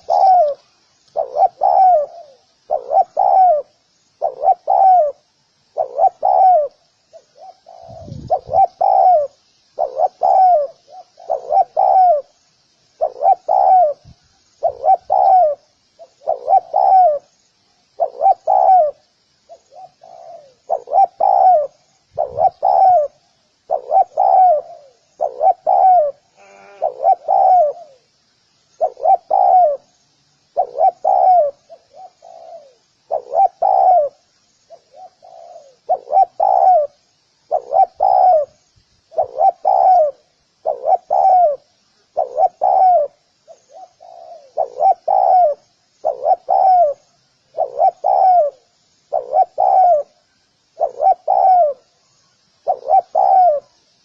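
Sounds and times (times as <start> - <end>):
dove cooing: 0.0 - 12.4, 13.0 - 17.3, 17.9 - 28.1, 28.8 - 29.9, 30.5 - 53.8
small birds chirping: 0.0 - 54.0.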